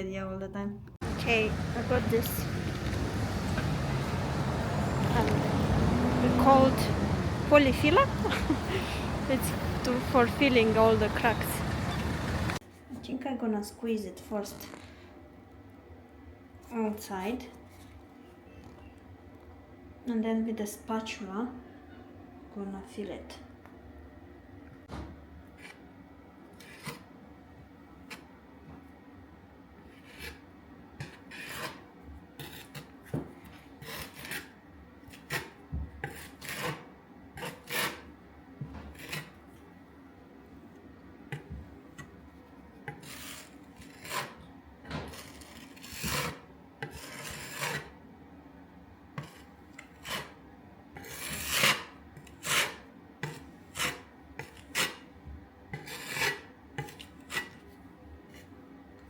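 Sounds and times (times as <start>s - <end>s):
spatula scraping filler on wall: 2.4s - 12.6s, 26.5s - 27.1s, 29.8s - 38.1s, 38.8s - 39.4s, 42.8s - 48.0s, 49.2s - 50.4s, 51.0s - 55.1s, 55.7s - 57.7s.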